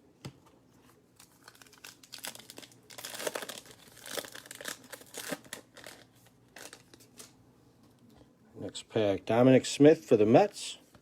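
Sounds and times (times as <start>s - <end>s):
wrapper tearing and crinkling: 1.2s - 7.3s.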